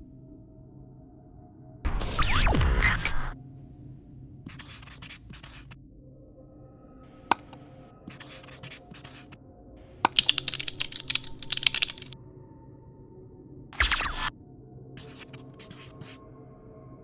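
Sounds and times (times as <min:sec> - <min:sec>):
typing on computer keyboard: 0:10.0 - 0:12.2.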